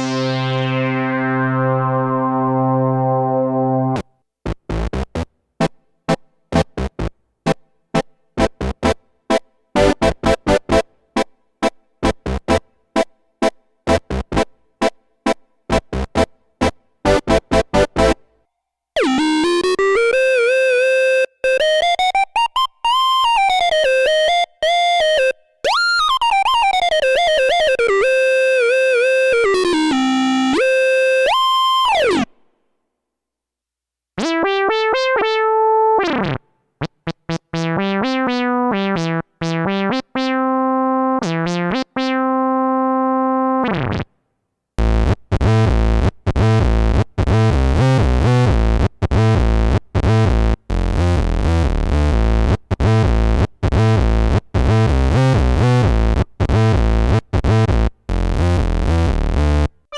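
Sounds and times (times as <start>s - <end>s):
held synth chord: 0.0s - 4.0s.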